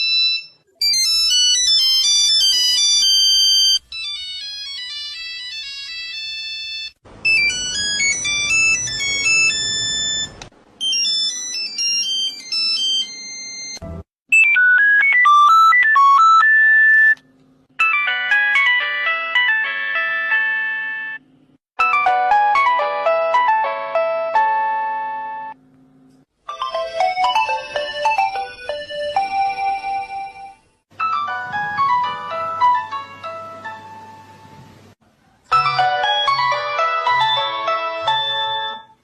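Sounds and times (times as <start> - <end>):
mobile phone ringtones: 0.0 - 17.2, 26.5 - 33.4.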